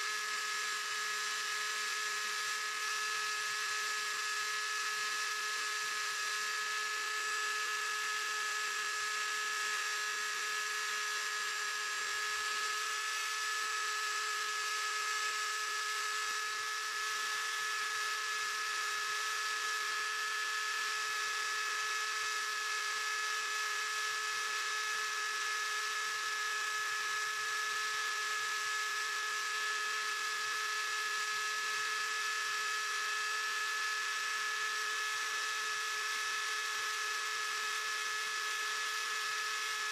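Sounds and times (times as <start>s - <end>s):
machine high-pitched whine: 0.0s - 39.9s.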